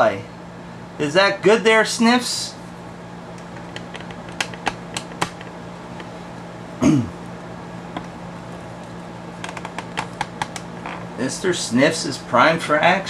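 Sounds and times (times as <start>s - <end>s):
steady low hum: 0.0s - 13.0s
person clearing throat: 6.8s - 7.2s.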